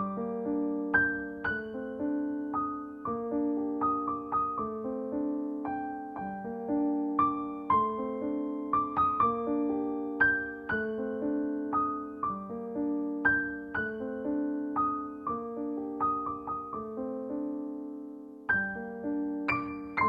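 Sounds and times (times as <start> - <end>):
gentle piano music: 0.0 - 20.0.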